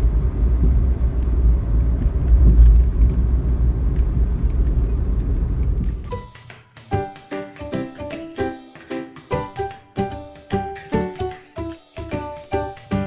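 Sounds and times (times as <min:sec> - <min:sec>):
car road and engine rumble: 0:00.0 - 0:06.1
music notes: 0:06.0 - 0:13.0.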